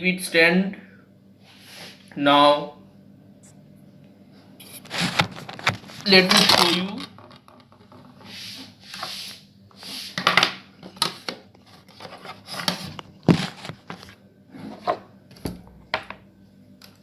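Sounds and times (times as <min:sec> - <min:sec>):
tripod rubbing and scraping: 0:04.6 - 0:06.9.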